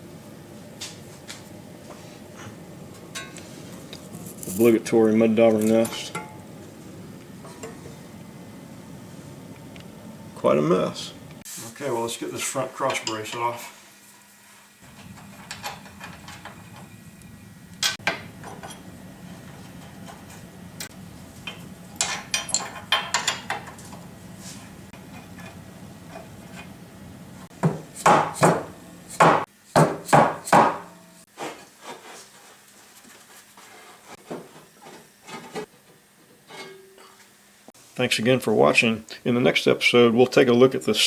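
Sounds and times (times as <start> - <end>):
steady low hum: 0.0 - 29.5.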